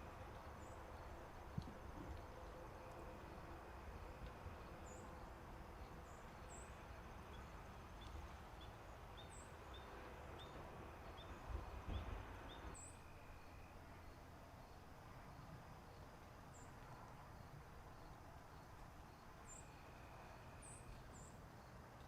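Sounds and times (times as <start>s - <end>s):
insect trill: 12.8s - 14.8s.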